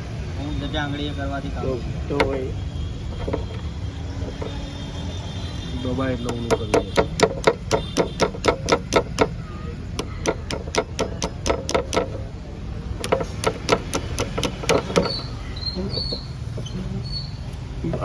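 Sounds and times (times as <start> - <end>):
hammer blows: 6.2 - 12.3.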